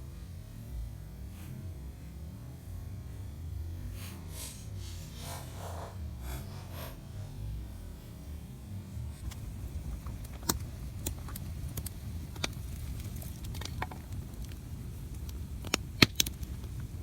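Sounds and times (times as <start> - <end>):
low steady rumble: 0.0 - 17.0
campfire crackling and popping: 9.1 - 17.0.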